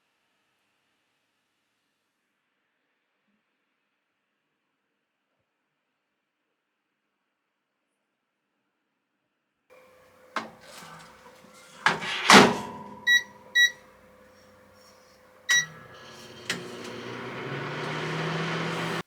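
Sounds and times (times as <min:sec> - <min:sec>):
microwave door shutting: 0:10.4 - 0:13.8, 0:15.5 - 0:19.0
microwave oven running hum: 0:10.4 - 0:13.8, 0:15.4 - 0:19.0
keypad beeps: 0:11.6 - 0:13.8, 0:15.5 - 0:17.1.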